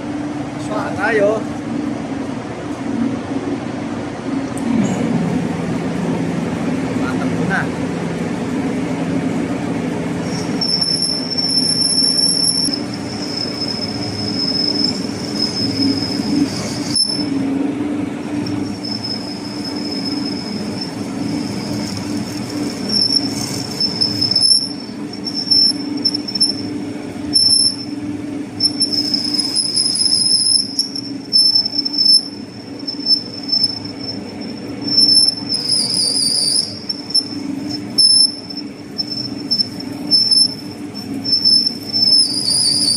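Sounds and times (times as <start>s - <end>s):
lathe humming: 5.2s - 42.9s
tool bit squealing on metal: 10.3s - 17.4s, 18.4s - 26.7s, 27.3s - 27.9s, 28.6s - 42.9s.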